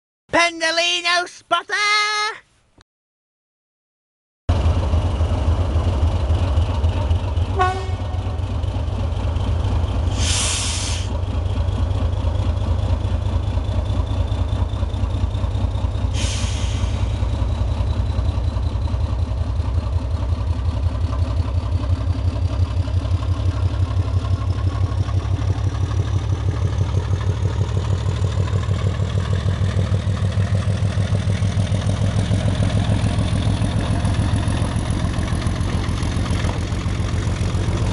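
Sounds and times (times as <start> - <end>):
diesel locomotive engine throbbing: 4.5 - 37.9
air hissing bursts: 10.1 - 11.1, 16.1 - 17.2.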